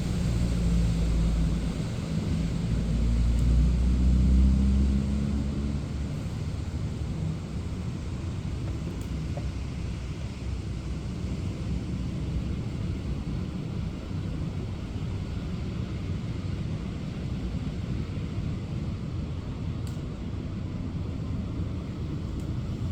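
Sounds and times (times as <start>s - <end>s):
rain hissing: 0.0s - 4.2s
passing traffic rumble: 0.0s - 9.9s.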